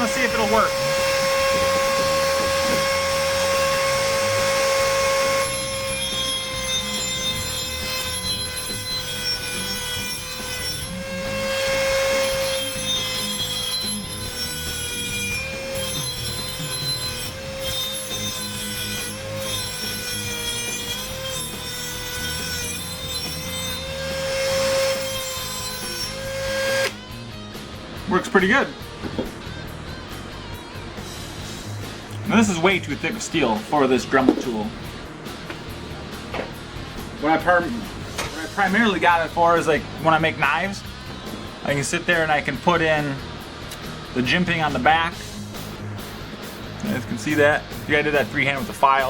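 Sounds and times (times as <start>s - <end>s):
rotary tool high whine: 0.0s - 27.2s
gritty cutting noise: 0.0s - 49.0s.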